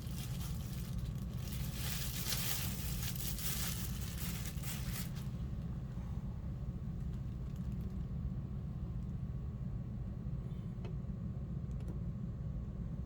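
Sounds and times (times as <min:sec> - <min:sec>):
packaging rustling and tearing: 0:00.0 - 0:05.4
steady low hum: 0:00.0 - 0:13.0.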